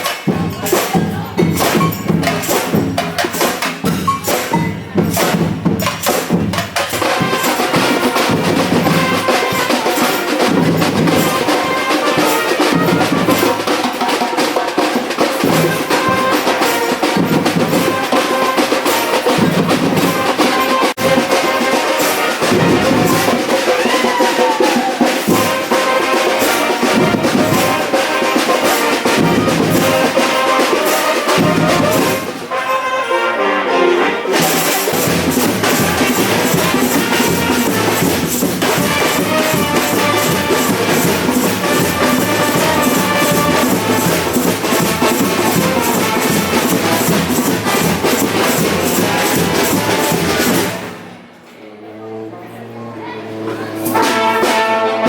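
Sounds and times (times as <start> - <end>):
horns holding notes: 0.0 - 51.0, 53.3 - 55.0
drums and percussion: 0.0 - 51.5, 53.4 - 55.0.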